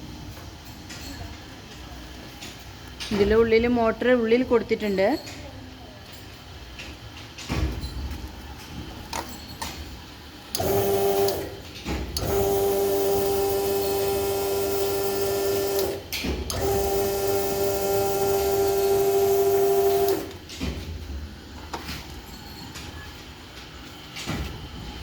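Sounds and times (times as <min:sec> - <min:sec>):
hydraulic motor humming: 0:10.5 - 0:20.6.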